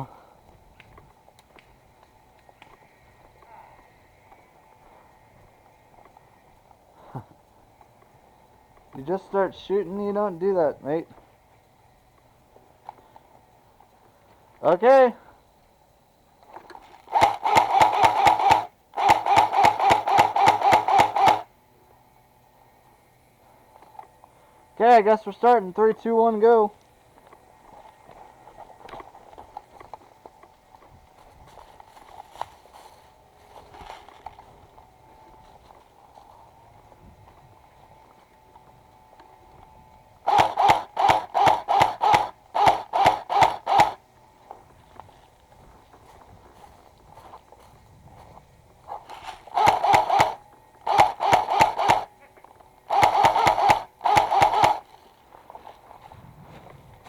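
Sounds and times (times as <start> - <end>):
airsoft gun firing bursts: 17.1 - 21.5, 40.2 - 44.0, 48.9 - 55.0.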